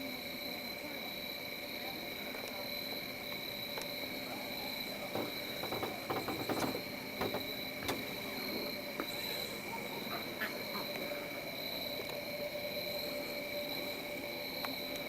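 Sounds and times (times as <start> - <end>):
night insects trilling: 0.0 - 15.0
light knocks: 5.1 - 8.0.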